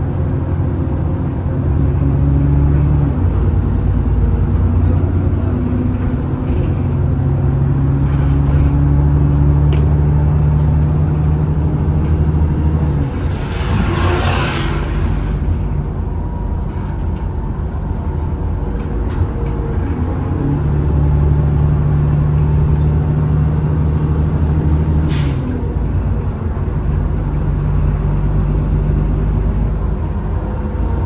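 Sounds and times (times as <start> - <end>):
bus engine running: 0.0 - 31.0
air brake hiss: 13.0 - 15.8, 25.1 - 25.5.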